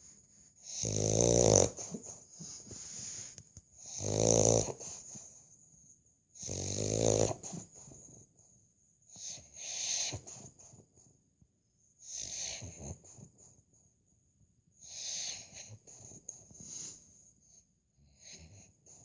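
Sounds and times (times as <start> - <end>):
dog breathing faintly: 0.0 - 5.9, 7.2 - 11.2, 14.8 - 19.0
dog snoring: 0.6 - 5.3, 6.4 - 8.3, 9.1 - 11.1, 12.0 - 13.5, 14.8 - 19.0.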